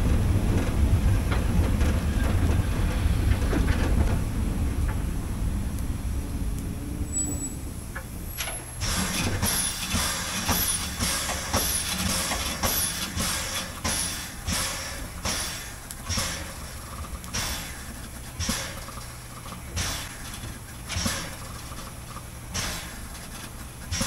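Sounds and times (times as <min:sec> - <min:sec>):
low rumble: 0:00.0 - 0:08.4
steam locomotive exhaust chuffs: 0:00.0 - 0:24.0.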